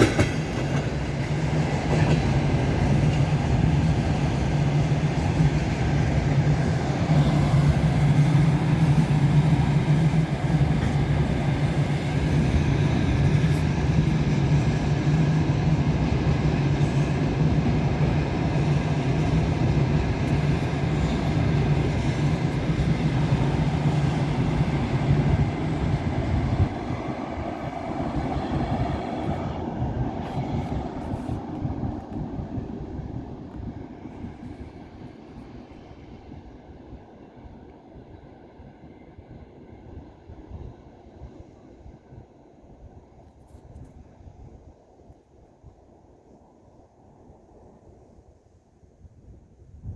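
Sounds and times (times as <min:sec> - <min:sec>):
electric locomotive hum: 0:00.0 - 0:48.4
train wheels on rail: 0:00.0 - 0:48.4.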